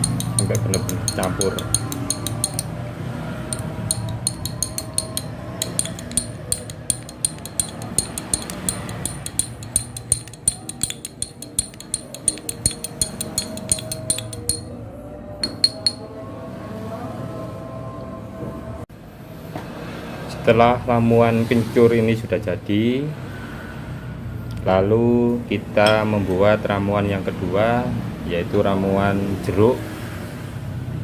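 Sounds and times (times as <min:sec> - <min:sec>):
spoon clinking against glass: 0:00.0 - 0:02.8, 0:03.5 - 0:14.7, 0:15.4 - 0:16.1, 0:25.9 - 0:26.1.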